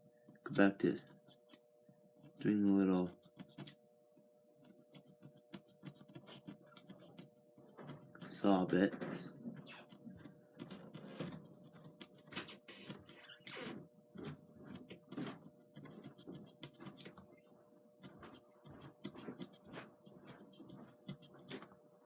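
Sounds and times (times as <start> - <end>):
blade sawing through foam board: 4.6 - 8.8, 9.7 - 13.8, 14.5 - 17.1, 18.0 - 21.7.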